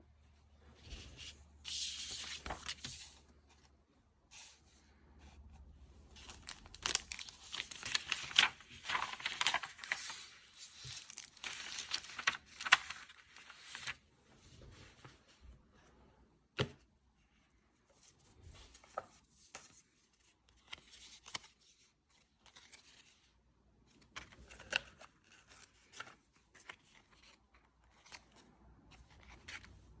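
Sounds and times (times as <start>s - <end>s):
paper and plastic packaging rustling: 6.1s - 14.0s.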